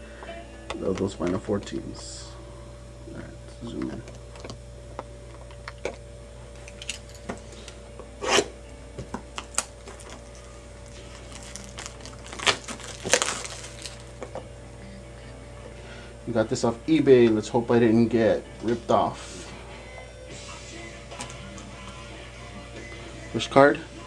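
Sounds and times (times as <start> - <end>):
wrapper rustling: 9.5 - 14.2.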